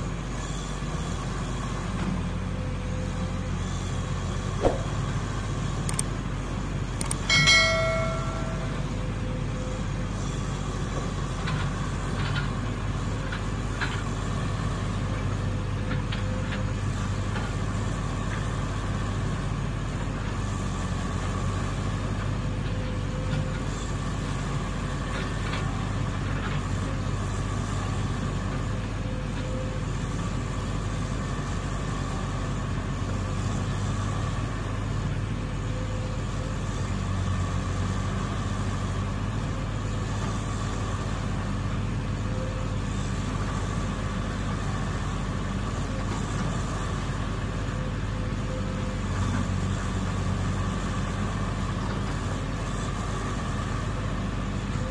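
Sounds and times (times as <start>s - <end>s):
diesel engine running: 0.0s - 54.9s.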